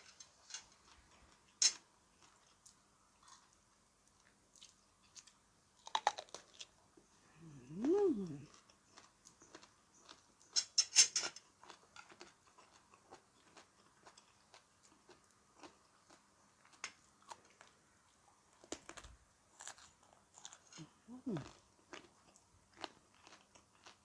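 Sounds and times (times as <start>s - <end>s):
person chewing crunchy food: 2.2s - 3.6s, 4.2s - 6.7s, 7.4s - 10.6s, 11.5s - 17.8s, 18.5s - 24.0s
mouth clicks: 7.4s - 8.5s.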